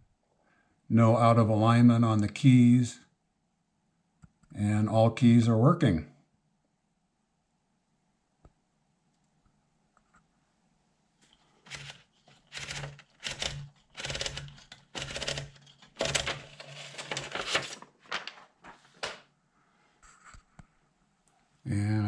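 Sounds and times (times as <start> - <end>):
typewriter key strikes clattering: 11.7 - 17.8.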